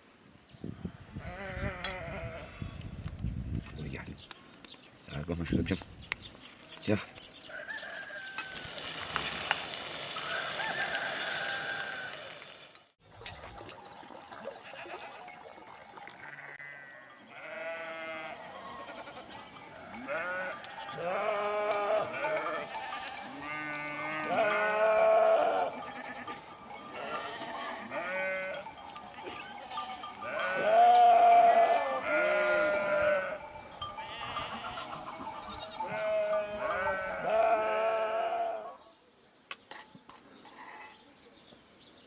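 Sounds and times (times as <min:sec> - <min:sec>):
sheep bleating: 0:16.3 - 0:26.4, 0:27.0 - 0:28.7, 0:29.7 - 0:38.8.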